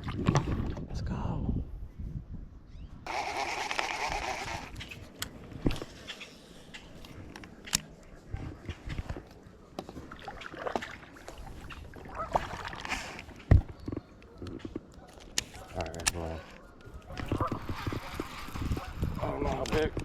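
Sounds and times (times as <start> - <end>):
water splashing: 0.0 - 0.8, 9.8 - 13.5, 17.1 - 19.2.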